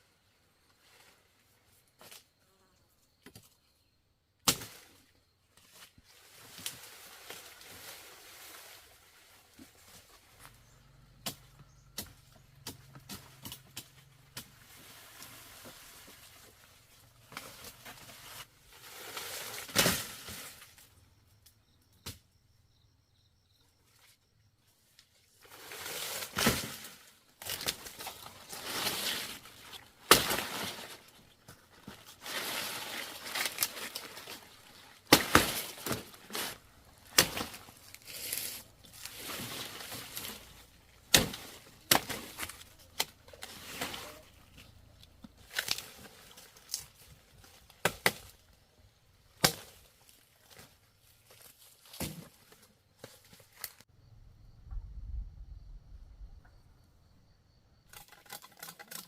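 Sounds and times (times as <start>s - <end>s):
rustling: 4.8s - 21.0s, 24.8s - 48.5s
sugarcane stalks cracking: 9.7s - 16.2s, 25.4s - 48.5s, 49.3s - 53.8s, 57.9s - 59.0s.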